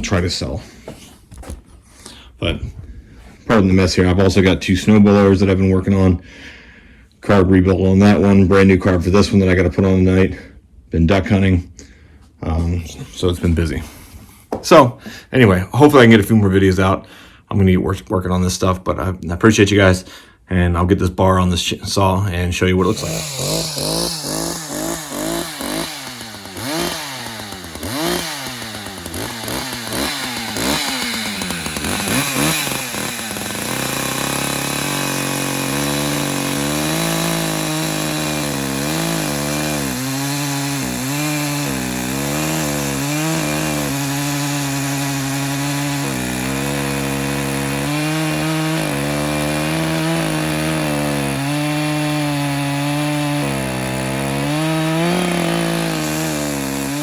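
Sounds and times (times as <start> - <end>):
chainsaw cutting wood: 22.8 - 57.0
chainsaw revving: 22.8 - 57.0.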